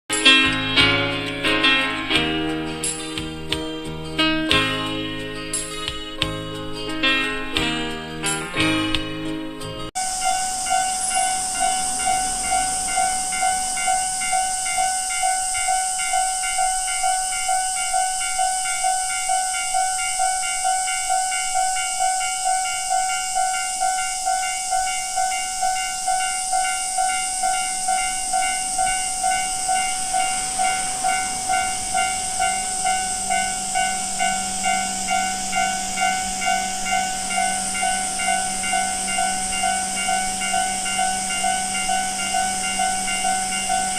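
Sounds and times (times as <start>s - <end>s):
low steady drone: 9.9s - 24.8s, 26.0s - 43.9s
level crossing alarm dinging: 9.9s - 43.9s.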